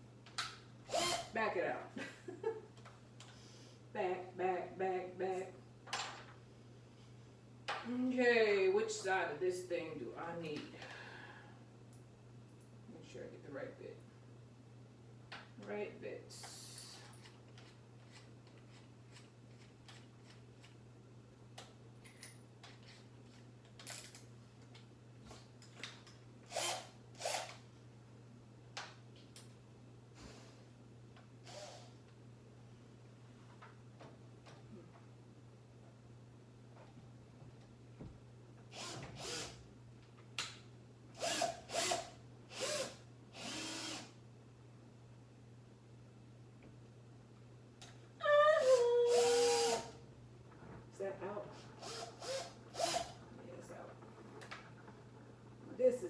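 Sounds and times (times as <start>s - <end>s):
steady low hum: 0.0s - 56.0s
cordless drill bursts: 0.9s - 1.4s, 26.5s - 27.6s, 31.4s - 31.9s, 38.7s - 39.6s, 41.2s - 44.2s, 48.6s - 50.0s, 51.5s - 53.2s.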